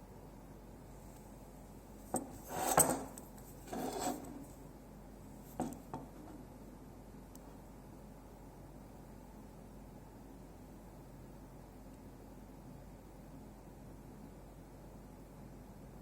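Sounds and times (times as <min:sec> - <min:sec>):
metal part scraping: 0:02.2 - 0:04.6.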